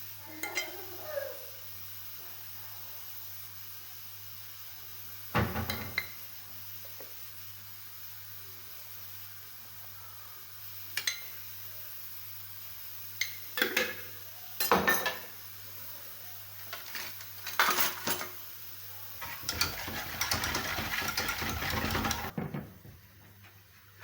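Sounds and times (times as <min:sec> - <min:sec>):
utensils clinking against dishes: 0:00.4 - 0:00.8, 0:13.2 - 0:15.3, 0:16.7 - 0:18.4, 0:19.2 - 0:22.3
utensils clattering and scraping: 0:16.6 - 0:18.4, 0:19.2 - 0:22.4.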